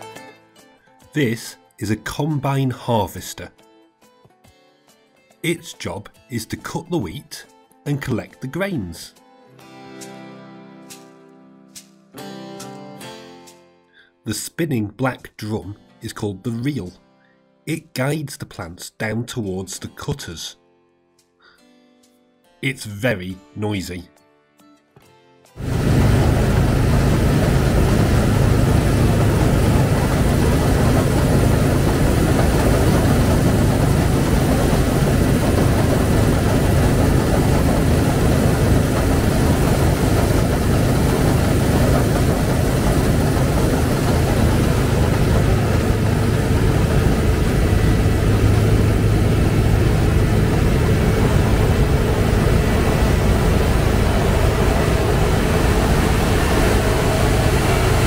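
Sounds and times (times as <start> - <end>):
combine harvester engine droning: 25.6 - 58.0.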